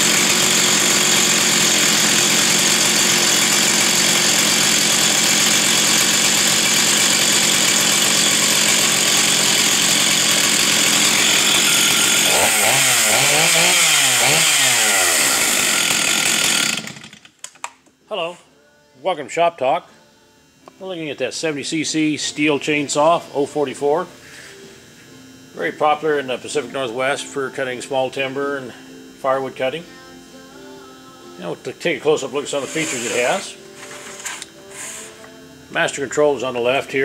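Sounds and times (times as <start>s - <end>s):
chainsaw running at high speed: 0.0s - 17.4s, 31.4s - 37.0s.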